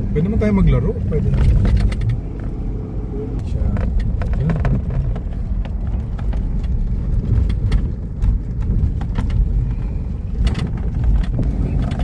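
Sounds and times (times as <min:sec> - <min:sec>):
knocks and rattles: 0:03.7 - 0:09.5.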